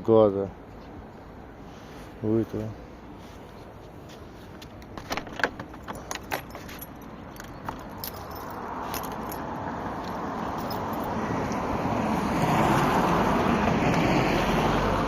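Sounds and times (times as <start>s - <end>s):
metallic jingling and clicking: 5.2s - 11.2s.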